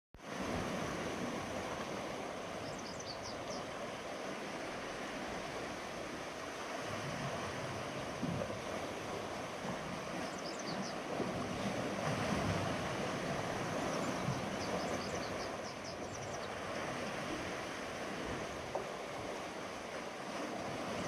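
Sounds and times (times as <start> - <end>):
sea waves washing onto shore: 0.2 - 21.0.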